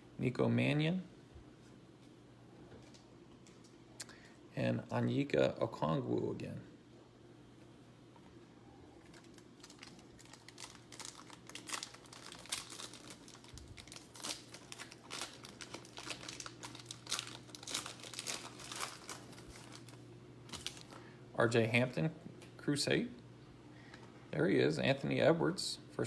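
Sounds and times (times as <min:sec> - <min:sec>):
wrapper crinkling and tearing: 0:09.0 - 0:21.1.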